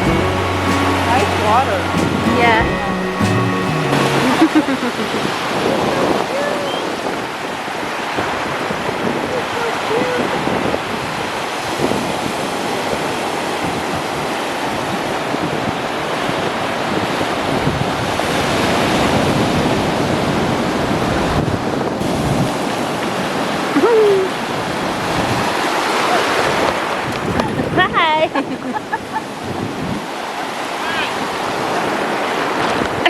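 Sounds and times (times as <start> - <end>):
rising then falling call: 0.0 - 5.4
ocean surf breaking: 0.0 - 33.0
wind buffeting microphone: 26.3 - 30.2.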